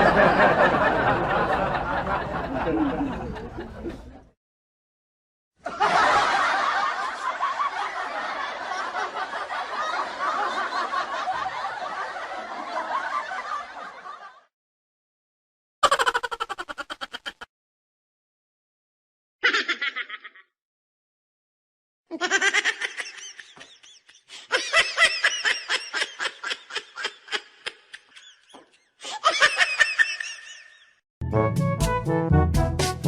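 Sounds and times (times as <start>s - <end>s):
studio audience laughter: 0.0s - 4.3s, 5.6s - 14.5s, 22.2s - 31.0s.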